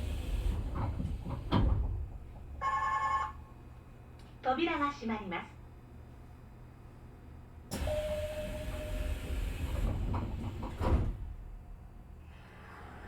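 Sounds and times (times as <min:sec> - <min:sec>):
train doors thumping shut: 0:00.4 - 0:02.5, 0:07.8 - 0:11.5
steady door warning tone: 0:07.8 - 0:09.2.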